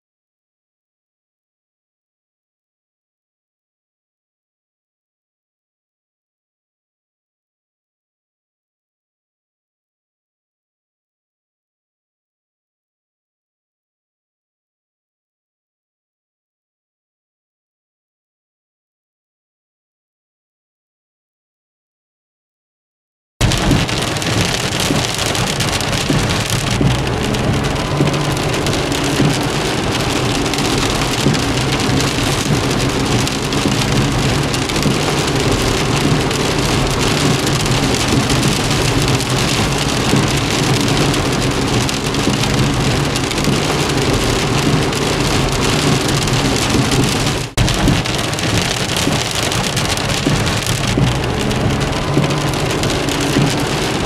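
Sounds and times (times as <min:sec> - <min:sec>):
heavy rain drumming on car: 0:23.4 - 0:54.0
low rumble: 0:23.4 - 0:54.0.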